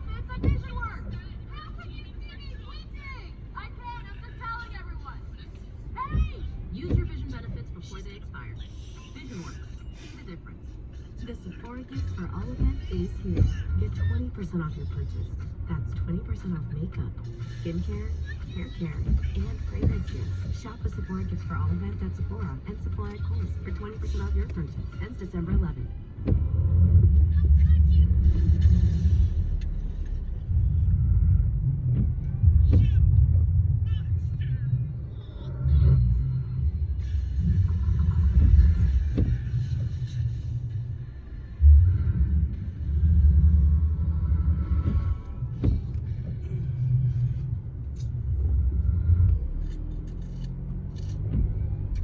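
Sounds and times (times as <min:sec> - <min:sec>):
car road rumble from inside: 0:00.0 - 0:52.0.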